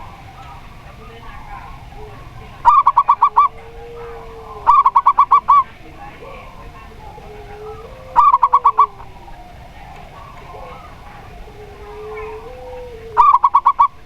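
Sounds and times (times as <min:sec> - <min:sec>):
dove cooing: 0:00.0 - 0:14.0.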